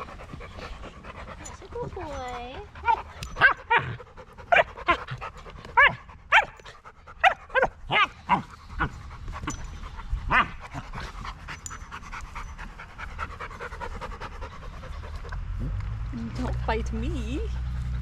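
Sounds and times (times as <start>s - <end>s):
dog panting: 0.0s - 15.6s
dog yelping whines: 2.0s - 5.1s, 7.2s - 8.4s.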